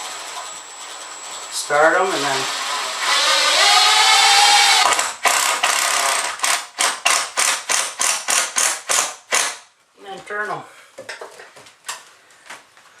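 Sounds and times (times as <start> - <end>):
power drill driving screw into wood: 2.5 - 9.6.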